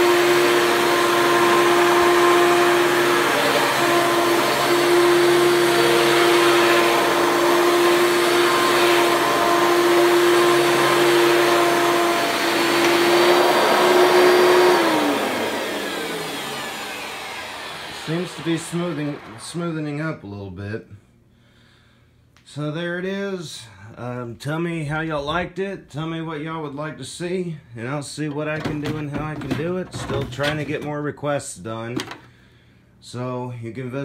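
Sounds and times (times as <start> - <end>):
vacuum cleaner running on carpet: 0.0 - 20.0.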